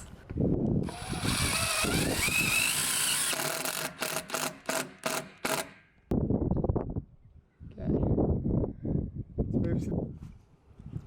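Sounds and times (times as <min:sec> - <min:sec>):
power drill driving screw into metal: 0:00.8 - 0:05.8
short drill trigger bursts: 0:00.8 - 0:05.8.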